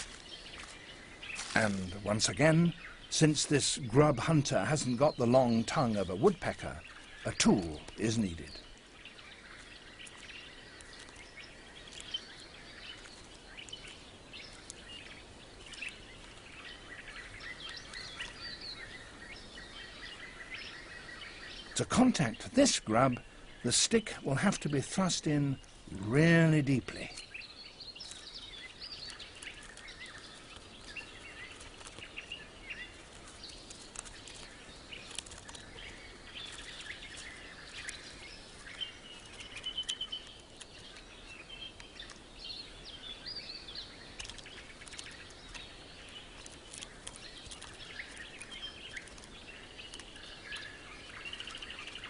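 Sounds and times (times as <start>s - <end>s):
bird chirps and calls: 0.0s - 52.0s.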